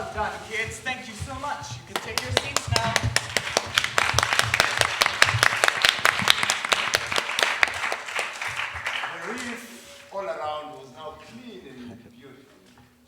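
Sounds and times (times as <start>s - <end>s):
audience applauding: 1.9s - 10.4s.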